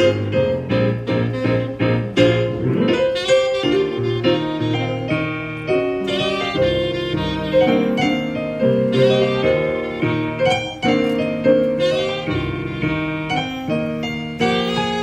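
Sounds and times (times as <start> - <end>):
keyboard chords: 0.0 - 15.0
saxophone melody: 0.0 - 15.0.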